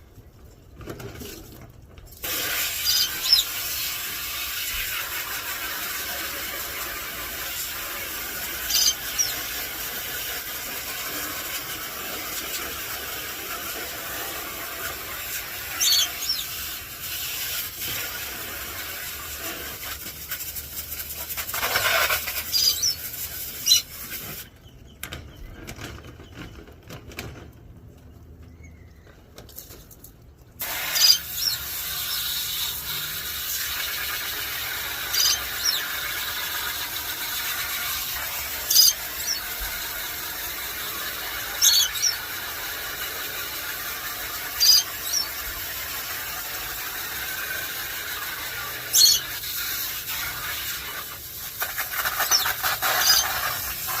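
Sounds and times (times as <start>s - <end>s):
garden hose spraying: 1.2s - 24.6s, 30.6s - 54.0s
short sharp high squeals: 30.7s - 32.8s.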